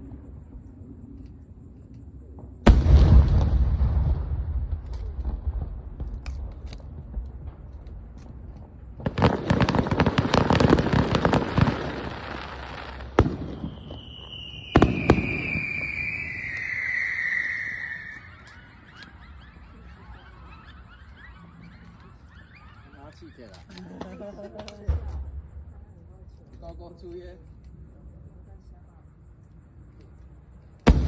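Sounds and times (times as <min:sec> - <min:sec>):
sharp firework bangs: 0:02.6 - 0:07.8, 0:08.6 - 0:23.0
firework boom: 0:02.6 - 0:12.2
firework crackling bursts: 0:02.7 - 0:23.5
falling whistle: 0:13.5 - 0:23.7.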